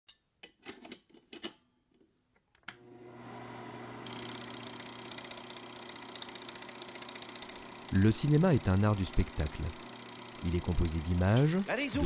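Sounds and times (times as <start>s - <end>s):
small machine humming: 2.8s - 12.0s.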